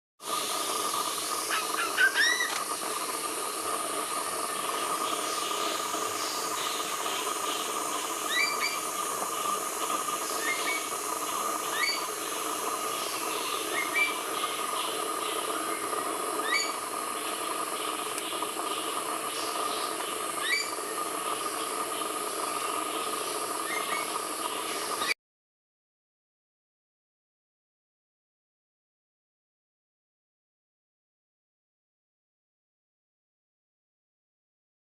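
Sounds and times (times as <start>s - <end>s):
steady hiss: 0.2s - 25.2s
magpie squeaky chirps: 1.5s - 2.6s, 8.3s - 8.8s, 11.7s - 12.1s, 16.4s - 16.8s, 20.4s - 20.8s.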